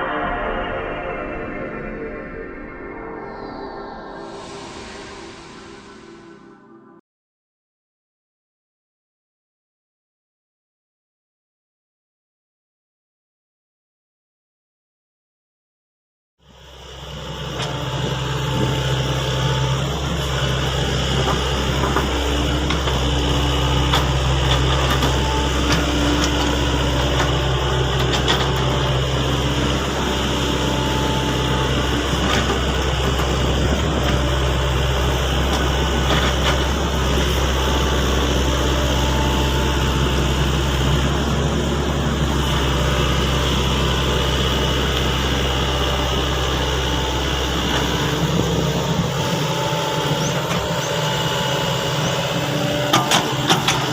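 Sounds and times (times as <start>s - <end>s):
excavator diesel engine running: 16.4s - 53.9s.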